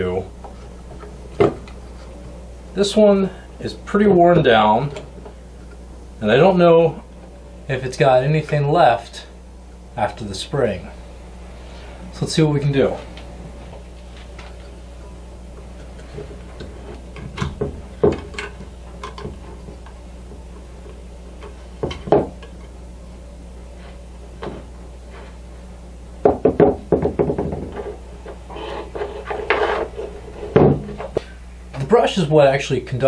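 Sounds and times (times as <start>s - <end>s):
steady low hum: 0.0s - 33.0s
scraping: 27.7s - 31.2s.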